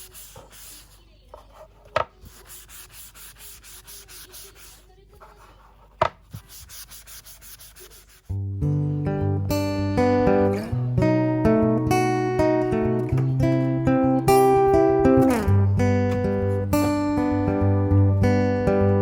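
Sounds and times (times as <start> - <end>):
wood being sanded: 0.0 - 1.0, 2.3 - 5.4, 6.3 - 8.3
strummed acoustic guitar music: 8.3 - 19.0.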